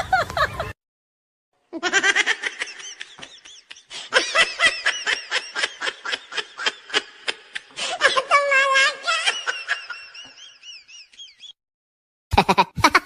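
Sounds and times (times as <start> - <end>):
high-pitched giggling: 12.3 - 13.0.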